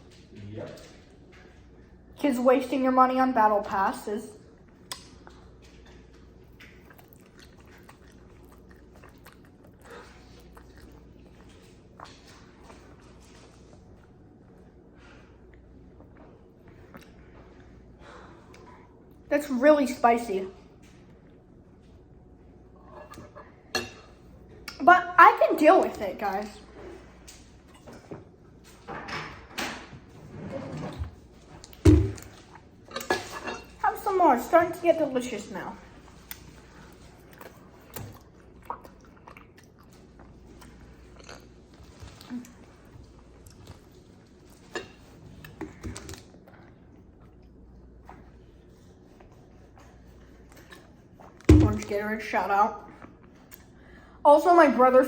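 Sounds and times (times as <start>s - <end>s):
chewing noodles: 4.5s - 19.3s, 35.8s - 51.5s.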